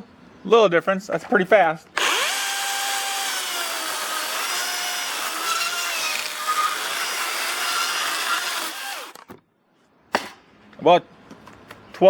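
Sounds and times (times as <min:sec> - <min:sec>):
electric chainsaw cutting wood: 0:02.0 - 0:09.3.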